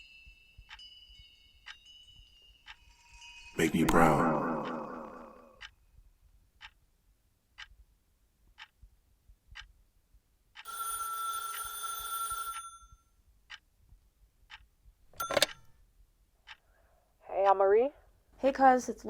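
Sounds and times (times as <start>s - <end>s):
telephone ringing: 10.6s - 13.0s, 15.2s - 15.7s.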